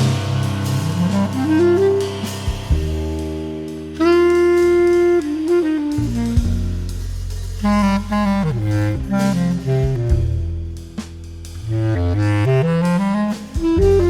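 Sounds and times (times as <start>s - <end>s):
woodwind melody: 0.0s - 11.0s, 11.6s - 14.0s
low sustained bass notes: 0.0s - 14.0s.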